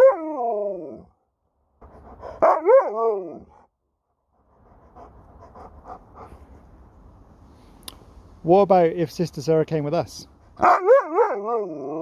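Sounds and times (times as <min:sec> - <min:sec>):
dog howling woo-woo: 0:00.0 - 0:01.1, 0:10.6 - 0:12.0.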